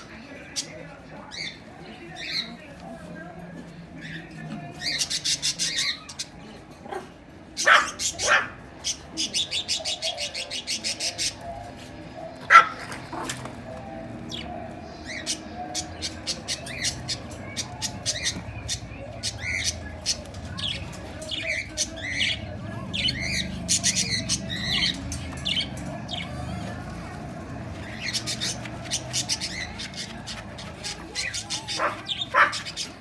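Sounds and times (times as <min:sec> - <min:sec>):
bird crying: 0:12.4 - 0:33.0
bird chirping rapidly: 0:14.2 - 0:33.0.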